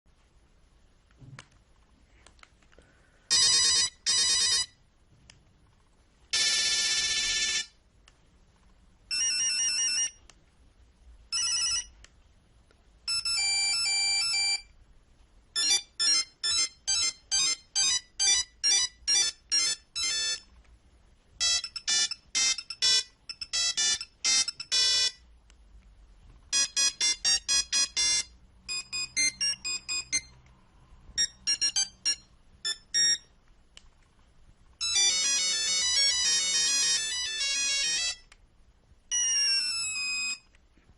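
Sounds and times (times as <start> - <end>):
monophonic ringtone beeps: 3.3 - 4.8, 9.1 - 10.2, 11.3 - 12.0, 13.1 - 14.7, 15.6 - 20.5, 21.4 - 25.2, 26.5 - 30.3, 31.2 - 33.3, 34.8 - 38.3, 39.1 - 40.5.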